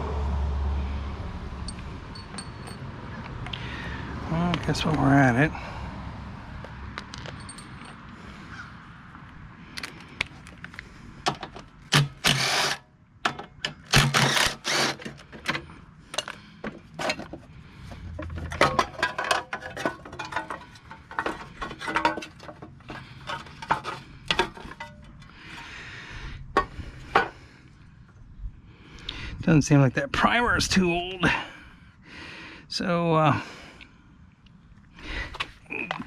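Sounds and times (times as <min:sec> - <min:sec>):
tools clicking and knocking on metal: 0:11.2 - 0:17.4, 0:18.2 - 0:25.3.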